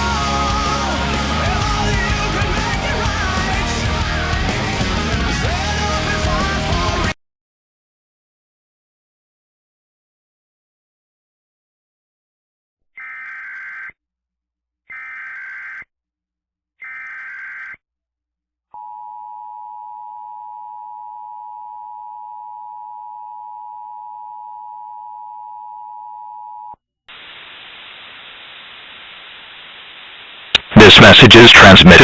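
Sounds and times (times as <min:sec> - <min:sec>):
two-tone attention signal: 0:13.0 - 0:13.9
warbling data bursts: 0:13.0 - 0:13.9, 0:14.9 - 0:15.8, 0:16.8 - 0:17.8
static hiss: 0:27.1 - 0:32.0.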